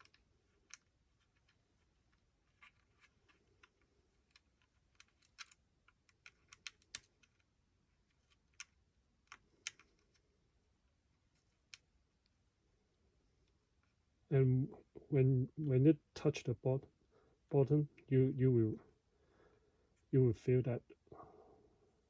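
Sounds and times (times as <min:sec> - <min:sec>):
hex key clicking on screw: 0:04.3 - 0:07.4.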